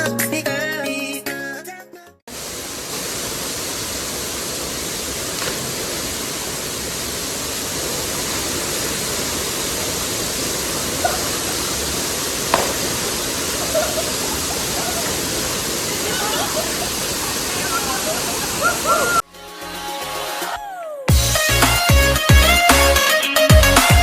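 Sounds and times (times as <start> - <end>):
waterfall rushing: 2.3 - 19.2
faint clicks: 5.3 - 6.0, 12.4 - 15.1.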